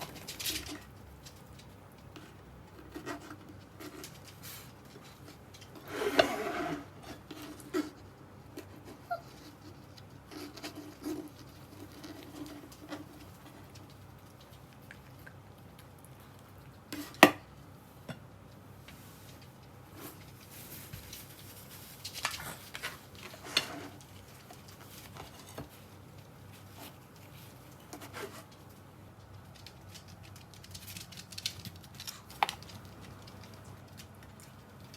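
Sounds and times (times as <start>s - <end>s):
rustling: 0.0s - 17.2s, 17.8s - 34.9s
dog chewing and licking: 10.8s - 16.9s.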